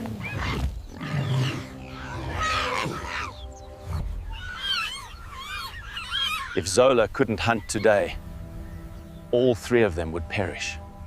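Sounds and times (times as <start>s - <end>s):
low rumbling animal calls: 0.0s - 9.0s
music with long held tones: 1.0s - 11.0s
short high animal calls: 4.3s - 6.7s.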